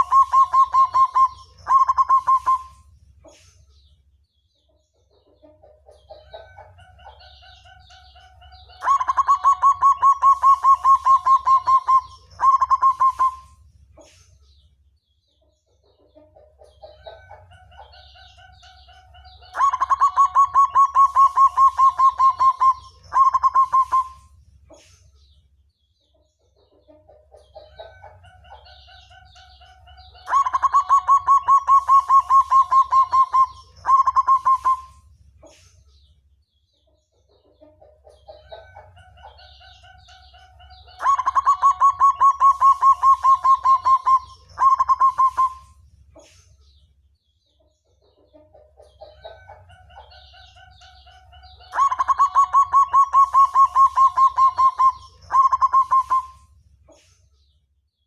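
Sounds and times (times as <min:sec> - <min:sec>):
dove cooing song: 0:00.0 - 0:02.9, 0:05.9 - 0:14.2, 0:16.6 - 0:24.4, 0:27.4 - 0:35.1, 0:38.1 - 0:45.8, 0:48.8 - 0:56.6.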